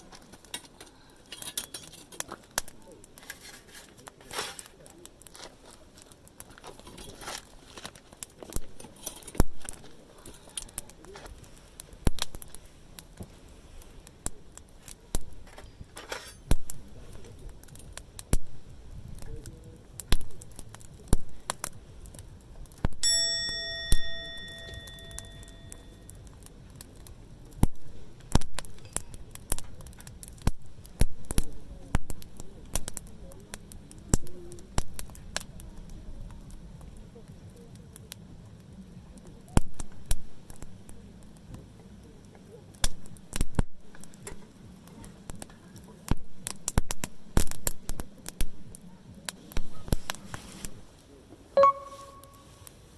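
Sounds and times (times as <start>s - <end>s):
campfire crackling and popping: 0.0s - 52.9s
metallic ding: 23.0s - 25.8s, 51.6s - 52.5s.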